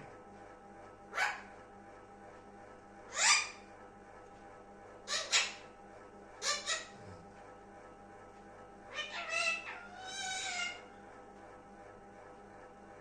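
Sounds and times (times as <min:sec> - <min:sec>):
parrot harsh calls: 0:03.1 - 0:03.6, 0:05.1 - 0:05.7, 0:06.4 - 0:07.1, 0:08.9 - 0:10.9.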